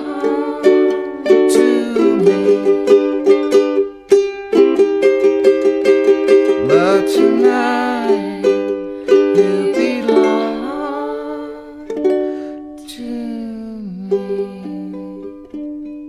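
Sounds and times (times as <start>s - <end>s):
person singing wordless notes: 0.0s - 3.3s, 6.6s - 12.0s, 12.8s - 15.3s
ukulele strumming: 0.0s - 16.0s.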